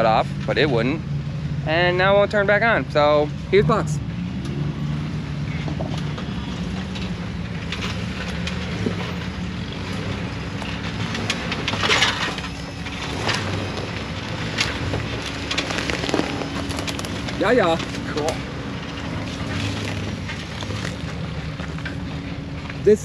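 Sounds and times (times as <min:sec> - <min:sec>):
car engine running at low revs: 0:00.0 - 0:23.0
rattling: 0:05.6 - 0:22.8.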